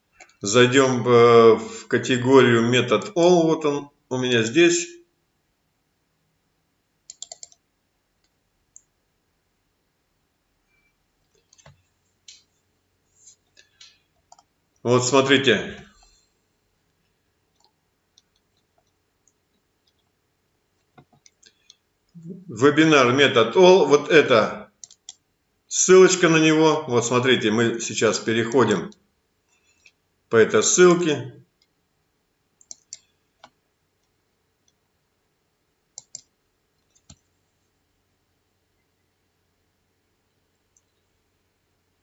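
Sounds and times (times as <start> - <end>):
computer mouse clicks: 7.1 - 7.6, 11.2 - 12.5, 13.6 - 14.5, 24.8 - 25.2, 32.6 - 34.8, 36.0 - 37.3.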